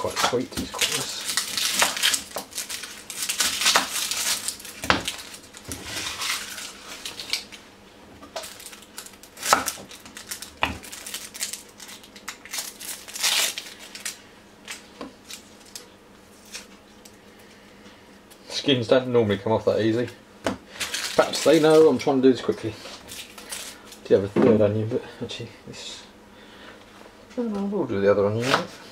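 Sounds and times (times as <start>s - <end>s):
onion skins crinkling and tearing: 0.0s - 7.6s, 8.3s - 17.6s, 20.7s - 24.1s.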